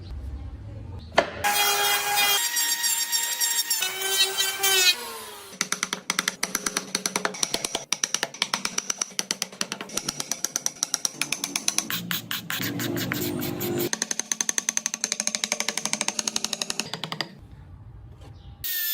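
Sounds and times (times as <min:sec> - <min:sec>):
fast percussive beat: 0:11.2 - 0:14.0.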